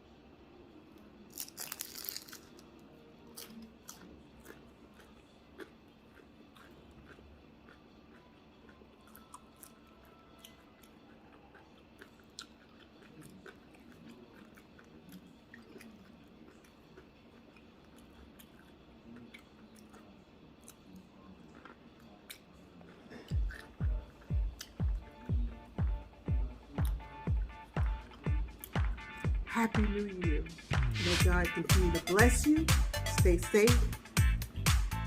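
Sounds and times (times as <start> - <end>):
person chewing crispy food: 1.3 - 25.1
thumping bass music beat: 23.3 - 35.0.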